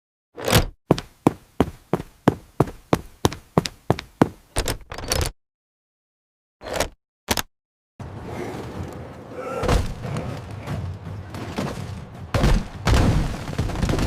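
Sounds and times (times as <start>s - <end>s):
heavy thuds: 0.6s - 4.7s.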